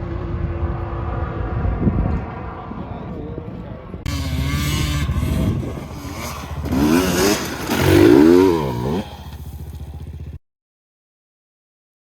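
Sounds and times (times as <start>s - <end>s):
quad engine revving: 4.1s - 10.4s.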